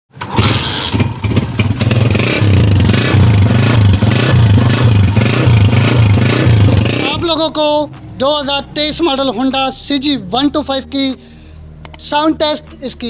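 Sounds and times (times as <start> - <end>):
motorcycle engine running: 0.1 - 7.7.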